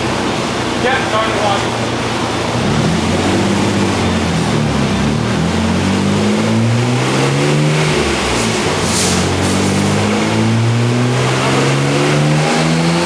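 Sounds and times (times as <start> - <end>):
car engine revving and misfiring: 0.0 - 13.0.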